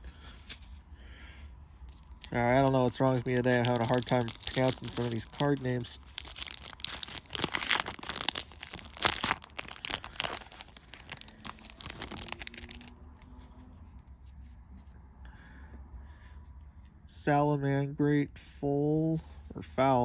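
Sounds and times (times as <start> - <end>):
wrapper tearing and crinkling: 2.1 - 12.9.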